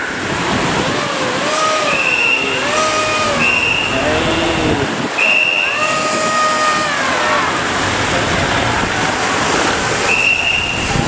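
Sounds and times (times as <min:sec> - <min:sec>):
churning water rushing: 0:00.0 - 0:11.0.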